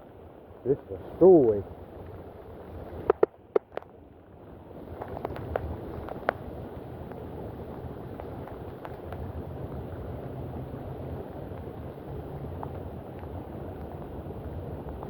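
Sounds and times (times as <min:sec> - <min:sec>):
wind rumbling on microphone: 0:00.0 - 0:15.0
faint clicks: 0:04.9 - 0:06.4.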